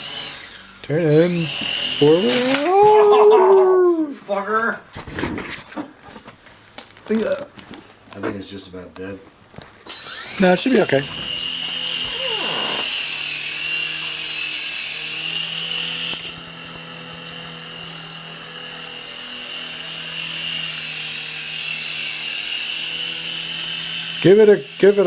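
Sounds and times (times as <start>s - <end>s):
toy helicopter rotors whining: 0.0s - 3.1s, 9.9s - 25.0s.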